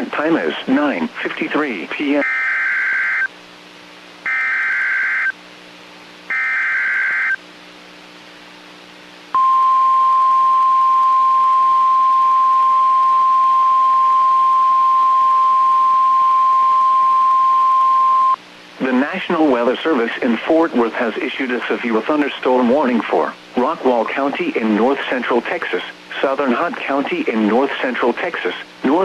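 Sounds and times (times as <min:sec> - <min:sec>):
single-pitch warning alarm tone: 0:02.2 - 0:03.3, 0:04.3 - 0:05.4, 0:06.3 - 0:07.4, 0:09.4 - 0:18.4
buzzy digital data bursts: 0:04.3 - 0:05.4.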